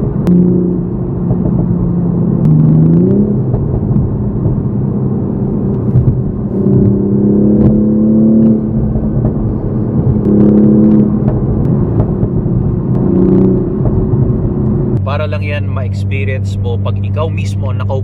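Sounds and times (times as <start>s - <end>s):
car engine accelerating: 0.0s - 18.0s
exhaust pops and bangs: 0.2s - 4.8s, 5.7s - 15.0s.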